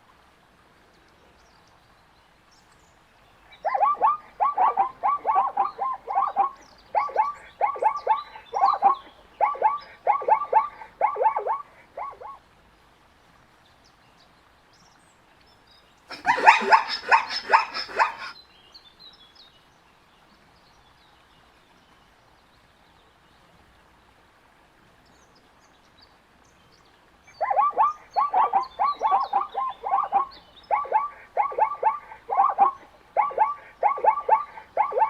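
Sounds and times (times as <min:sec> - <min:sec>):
zebra barking bray: 0:03.6 - 0:12.4, 0:16.1 - 0:18.3, 0:27.3 - 0:35.0.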